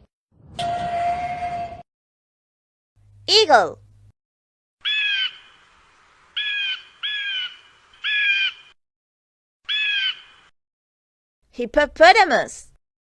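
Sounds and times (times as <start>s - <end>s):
eagle calls: 4.8s - 5.6s, 6.4s - 8.8s, 9.7s - 10.5s.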